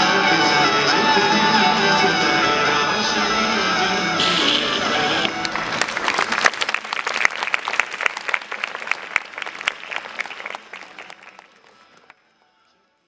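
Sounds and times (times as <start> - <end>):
audience applauding: 4.2 - 12.1.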